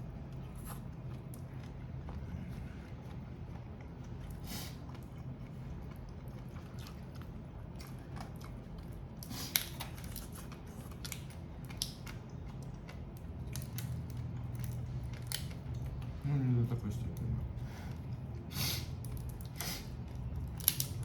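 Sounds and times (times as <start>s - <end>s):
low steady hum: 0.0s - 21.0s
shells cracking and snapping: 9.2s - 12.3s, 13.0s - 16.0s, 20.4s - 21.0s.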